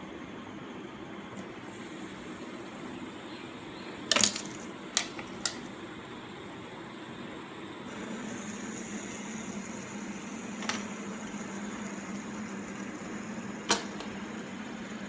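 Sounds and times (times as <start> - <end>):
fidget spinner whirring: 1.4 - 15.0
sharp click: 4.1 - 5.7.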